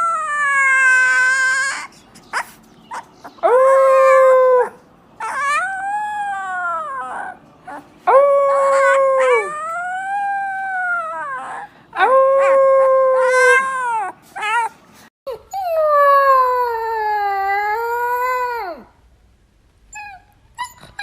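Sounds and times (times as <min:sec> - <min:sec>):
puppies howling: 0:00.0 - 0:14.7.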